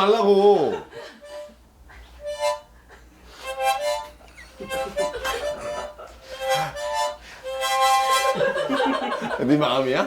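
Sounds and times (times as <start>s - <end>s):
harmonica wavering chords: 1.2s - 8.8s.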